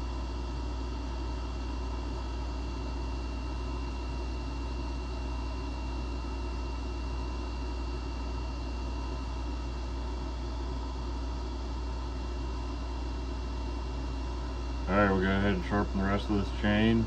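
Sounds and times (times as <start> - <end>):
machine hum: 9.4 - 17.0
faint high whine: 12.7 - 17.0.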